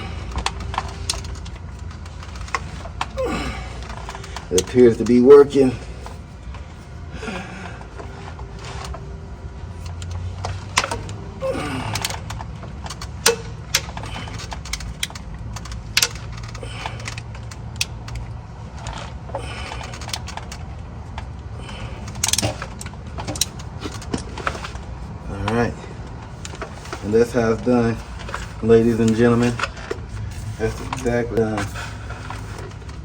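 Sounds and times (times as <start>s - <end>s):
steady low hum: 0.0s - 33.0s
metallic clicks and knocks: 11.9s - 21.3s.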